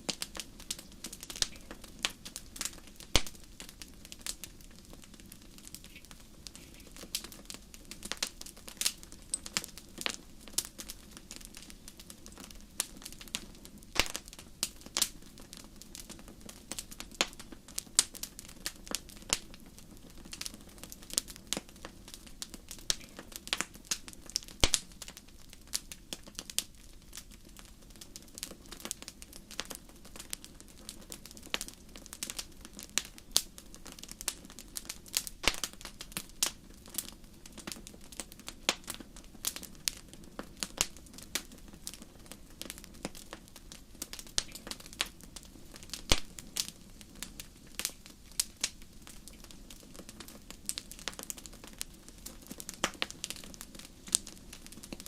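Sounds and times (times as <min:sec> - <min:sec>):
faint hiss of flames: 0:00.0 - 0:55.0
fire crackling and snapping: 0:00.0 - 0:55.0.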